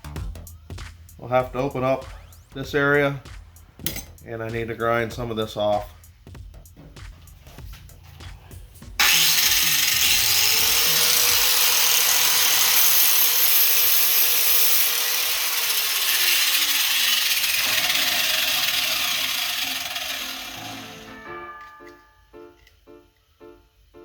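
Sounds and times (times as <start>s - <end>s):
grinder motor whine: 9.0s - 21.2s
grinder grinding metal: 9.0s - 21.8s.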